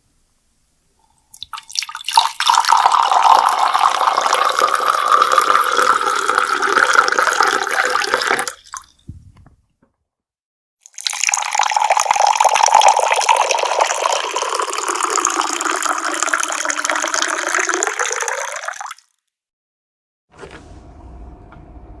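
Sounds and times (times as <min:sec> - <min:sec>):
water dripping: 0:01.0 - 0:09.0
water pouring in a stream: 0:01.3 - 0:08.9, 0:10.8 - 0:19.1
soft low thump: 0:09.0 - 0:09.9.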